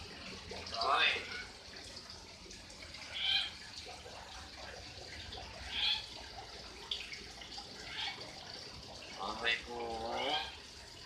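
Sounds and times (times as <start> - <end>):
myna bird calling: 3.1 - 3.6.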